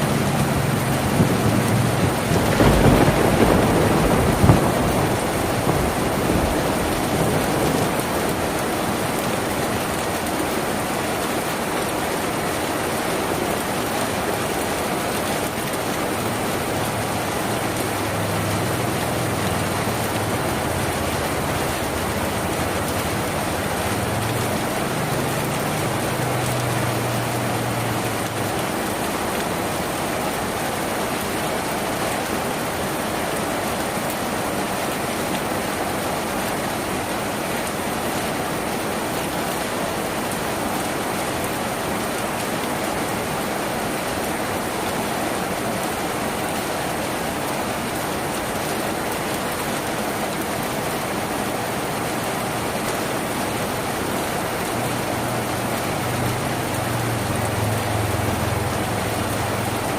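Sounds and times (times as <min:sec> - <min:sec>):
heavy rain on a tin roof: 0:00.0 - 0:59.9.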